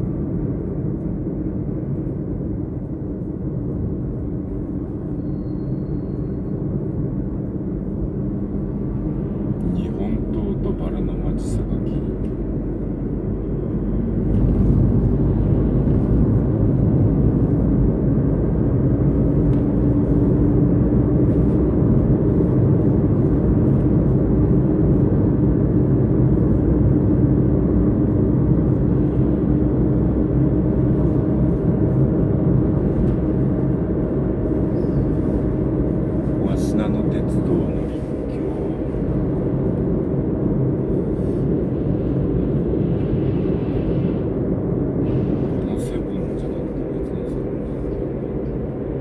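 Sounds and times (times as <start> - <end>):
road and wind rumble: 0.0 - 49.0.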